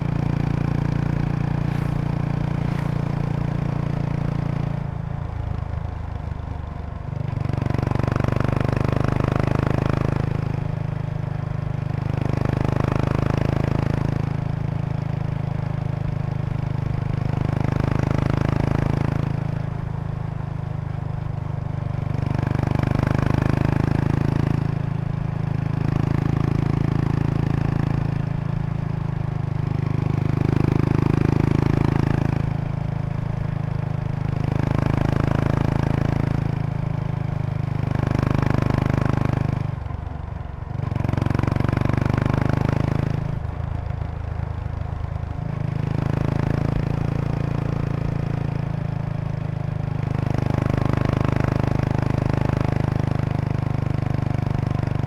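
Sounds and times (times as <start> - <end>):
motorcycle engine at low revs: 0.0 - 55.0
buzzing rattle of seat bag: 1.4 - 3.9.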